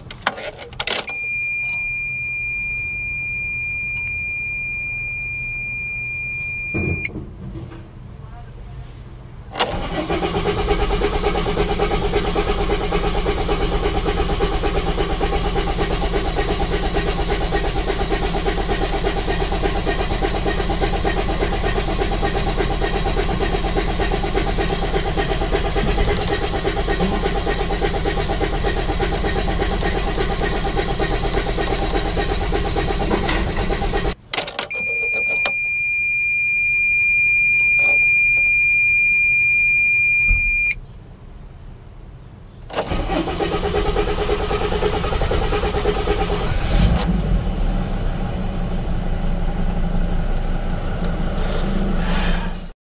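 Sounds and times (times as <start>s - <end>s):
high electronic warning tone: 1.1s - 7.1s, 34.7s - 40.8s
diesel engine turning over: 9.6s - 35.5s, 42.7s - 52.6s.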